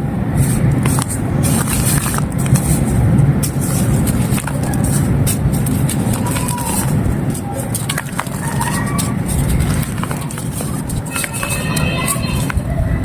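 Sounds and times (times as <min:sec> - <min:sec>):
dry clay crumbling: 0:00.4 - 0:12.6.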